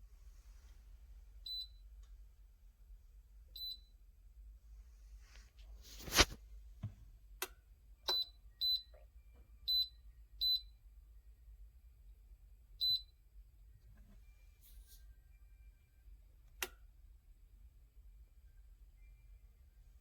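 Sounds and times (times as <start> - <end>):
kettle control panel beeps: 3.5 - 3.9, 7.4 - 10.8, 12.8 - 13.2.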